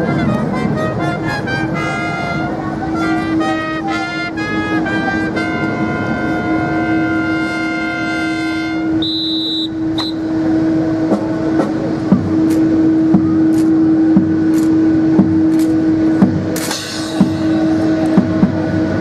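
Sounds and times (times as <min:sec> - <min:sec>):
held brass chord: 0:00.0 - 0:10.5
steady low hum: 0:00.0 - 0:19.0
shrill whistle blast: 0:09.0 - 0:10.3
sharp clacks: 0:12.4 - 0:12.8, 0:13.5 - 0:13.8, 0:14.5 - 0:15.8, 0:16.5 - 0:18.3.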